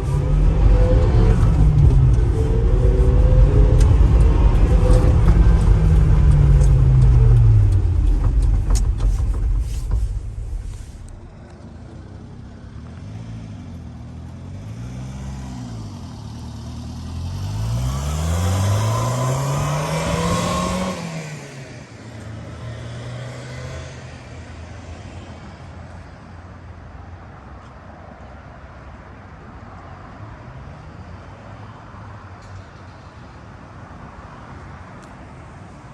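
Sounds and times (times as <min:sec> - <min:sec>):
small engine revving: 0:00.0 - 0:11.4, 0:14.5 - 0:21.7.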